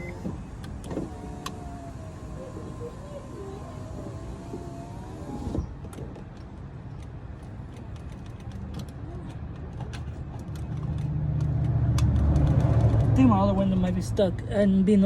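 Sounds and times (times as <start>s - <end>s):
power window motor whining: 0.0s - 5.7s.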